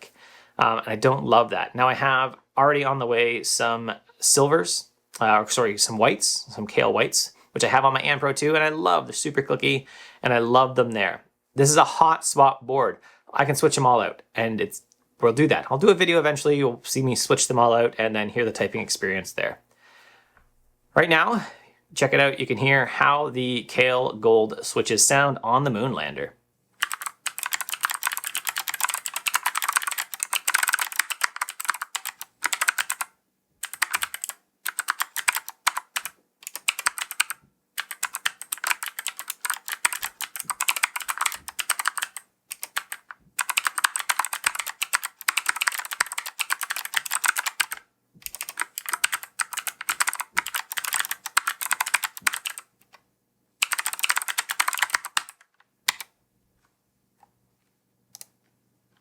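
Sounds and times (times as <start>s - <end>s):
mechanical keyboard key clicks: 26.8s - 52.6s, 53.6s - 56.1s.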